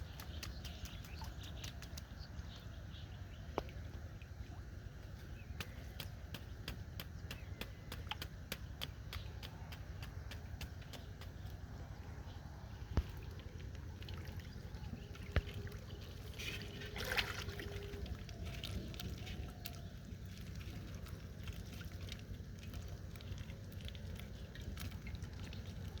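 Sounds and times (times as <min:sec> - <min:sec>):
water sloshing and trickling: 0:00.0 - 0:26.0
water splash: 0:14.0 - 0:19.3.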